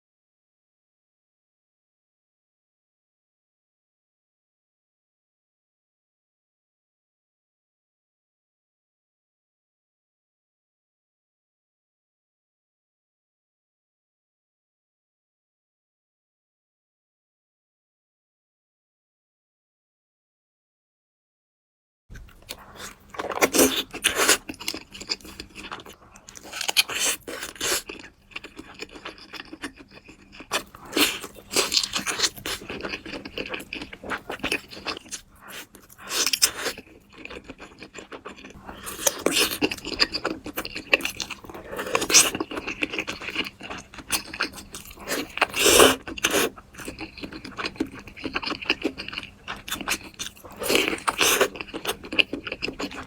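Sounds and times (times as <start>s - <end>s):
person biting and chewing: 22.2s - 53.0s.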